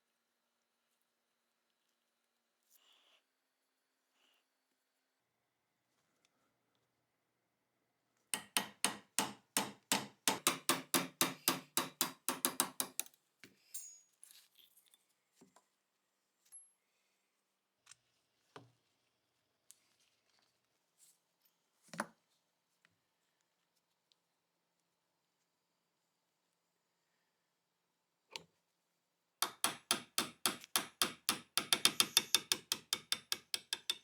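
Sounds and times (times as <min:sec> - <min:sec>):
ringing hammer taps: 0:31.2 - 0:34.0.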